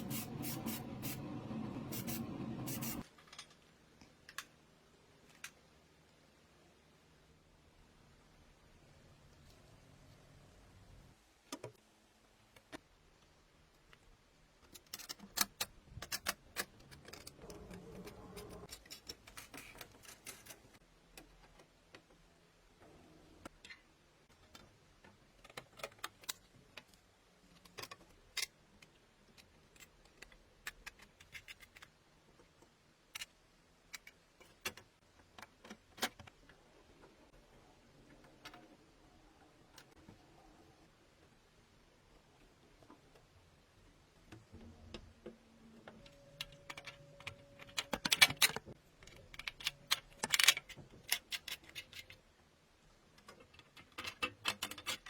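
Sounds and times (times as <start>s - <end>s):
metal parts clicking and tapping: 14.6s - 22.2s, 23.5s - 36.5s, 46.0s - 52.3s, 53.1s - 55.0s.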